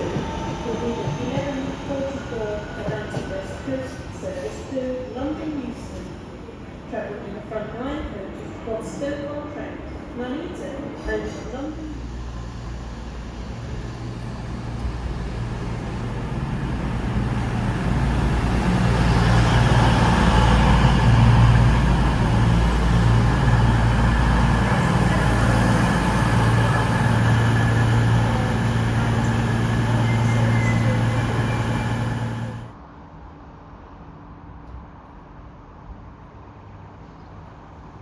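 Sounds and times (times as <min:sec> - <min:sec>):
diesel train engine humming: 0:11.0 - 0:32.8.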